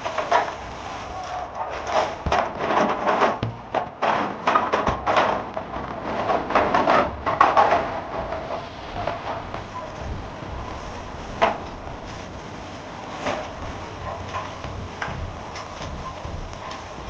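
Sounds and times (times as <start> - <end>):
rubbing and scraping of shelves: 0.0 - 17.0.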